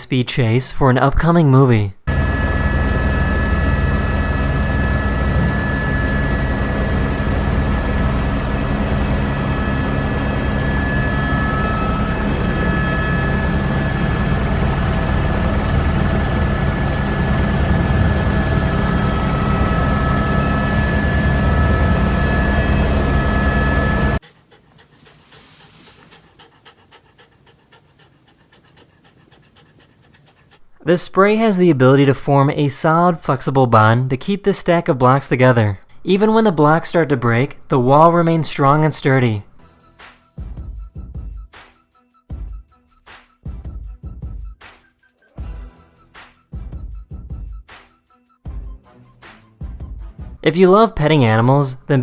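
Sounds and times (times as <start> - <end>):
helicopter engine and rotor: 2.1 - 24.2.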